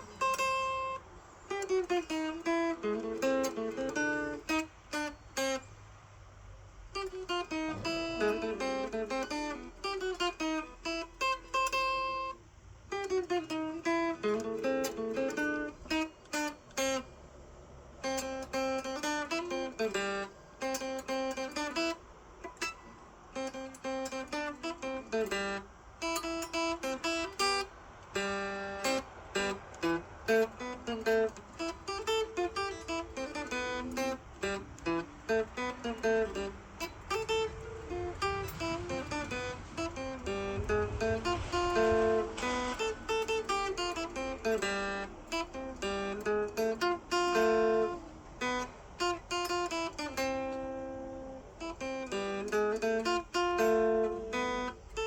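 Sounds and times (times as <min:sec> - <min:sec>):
guitar plucked notes and chords: 0:00.0 - 0:55.0.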